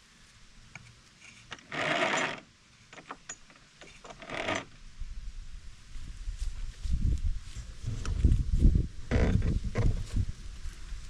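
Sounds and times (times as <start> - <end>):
winch line rasping scrapes: 1.2 - 4.7.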